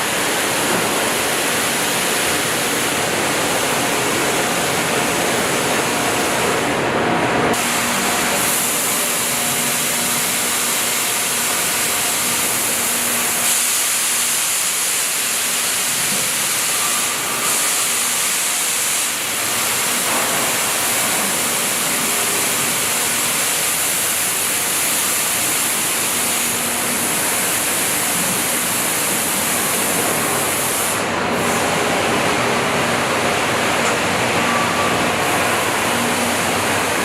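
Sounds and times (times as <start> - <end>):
loud steady hiss: 7.5 - 37.0.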